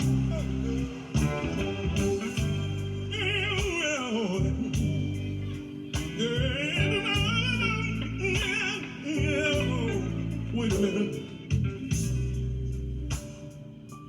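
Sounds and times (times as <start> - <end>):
sustained low chords: 0.0 - 3.7, 4.4 - 8.5, 9.2 - 10.8, 11.5 - 13.2
gospel singing with vibrato: 0.0 - 12.7.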